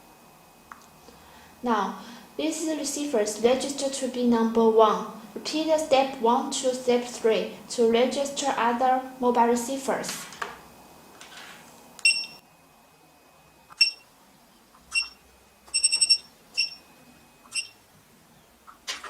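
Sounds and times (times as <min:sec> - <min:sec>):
high electronic beeps: 0:12.0 - 0:12.4, 0:13.7 - 0:14.1, 0:14.9 - 0:17.8.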